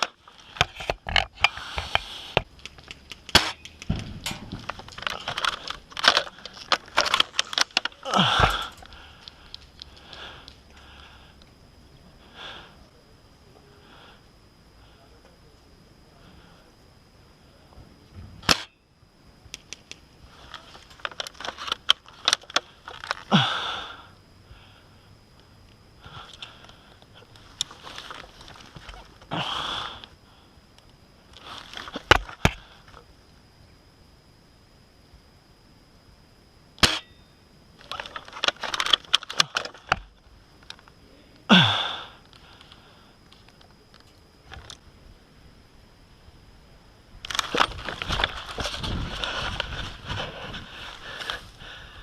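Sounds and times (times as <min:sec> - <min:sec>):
clicks and rattles: 0:00.0 - 0:09.8
airsoft rifle shot crack: 0:03.3 - 0:04.7, 0:36.8 - 0:37.1
spring twang: 0:36.8 - 0:37.3.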